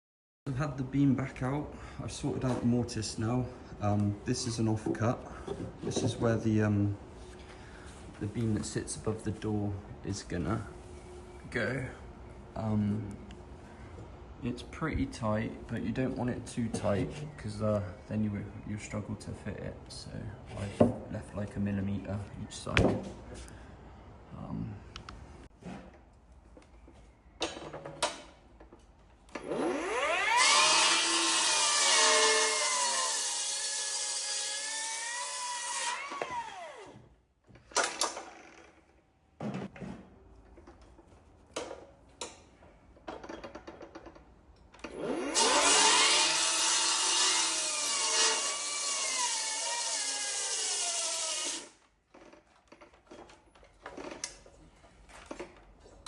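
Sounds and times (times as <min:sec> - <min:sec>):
knocks of wood and tools handled: 0:22.7 - 0:23.5
power saw cutting wood: 0:29.4 - 0:37.0, 0:44.9 - 0:51.8.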